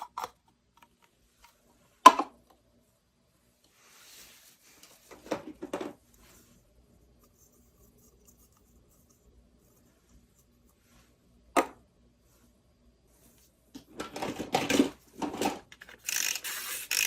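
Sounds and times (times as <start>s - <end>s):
toy pieces clicking and clattering: 15.8s - 17.0s.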